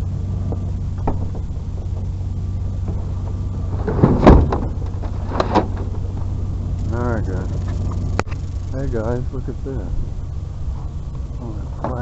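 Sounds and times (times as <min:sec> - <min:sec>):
vehicle engine idling: 0:00.0 - 0:12.0
loud knock and clatter: 0:01.0 - 0:06.4.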